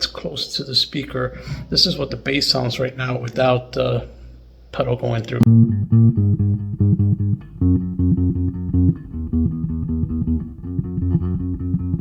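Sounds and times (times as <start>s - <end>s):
electric bass riff: 5.3s - 12.0s.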